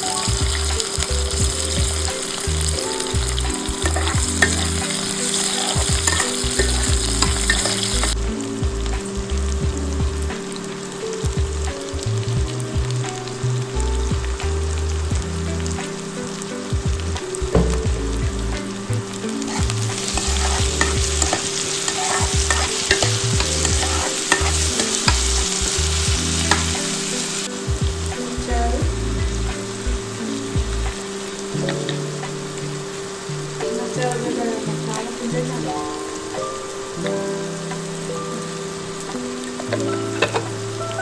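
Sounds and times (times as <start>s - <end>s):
food sizzling in oil: 0.0s - 41.0s
utensil scraping a pan: 3.8s - 8.2s, 19.3s - 27.4s.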